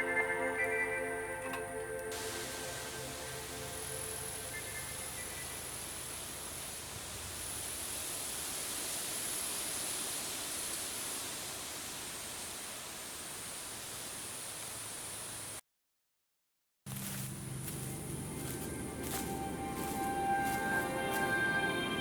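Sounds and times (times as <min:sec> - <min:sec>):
steady hiss: 0:02.1 - 0:15.6.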